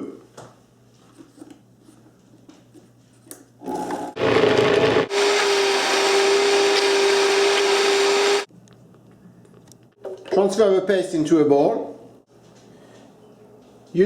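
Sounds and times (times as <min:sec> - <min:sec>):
blender whining: 0:03.6 - 0:08.5.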